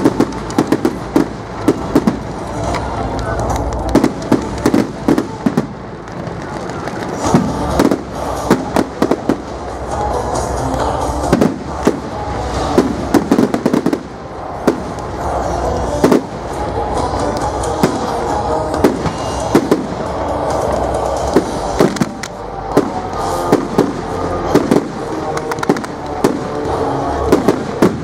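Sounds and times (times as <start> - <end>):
fireworks bangs and cracks: 0.0 - 28.0.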